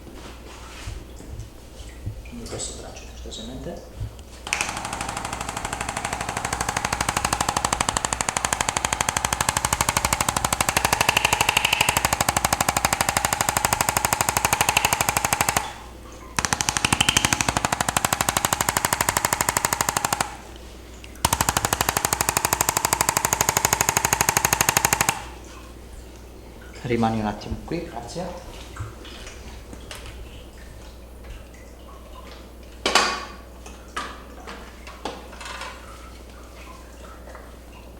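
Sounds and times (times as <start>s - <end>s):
percussion massager hammering: 4.5s - 20.6s, 21.3s - 25.4s.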